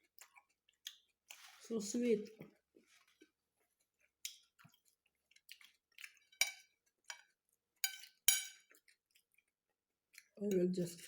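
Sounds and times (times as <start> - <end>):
utensils clinking against a plate: 6.4 - 8.7.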